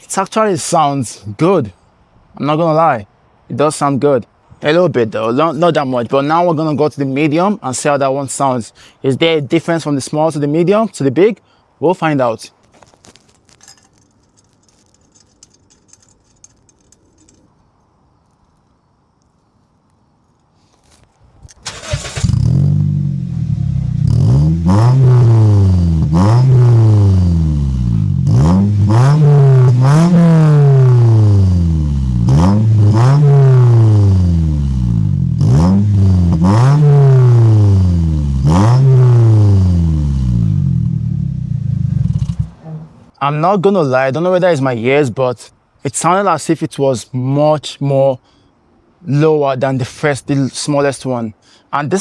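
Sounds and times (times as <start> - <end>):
car engine starting and revving: 21.6 - 43.1.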